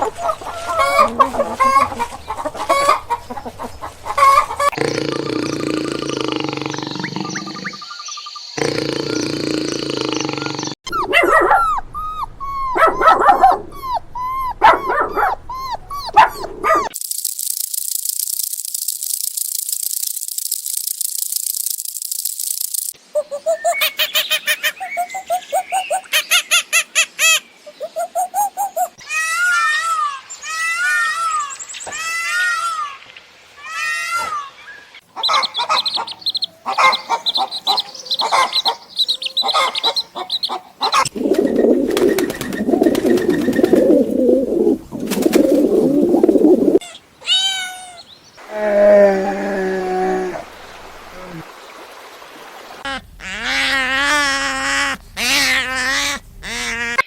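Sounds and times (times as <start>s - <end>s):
bird calls and chirps: 0.0s - 10.8s, 16.8s - 29.3s, 34.2s - 44.0s, 46.8s - 48.4s.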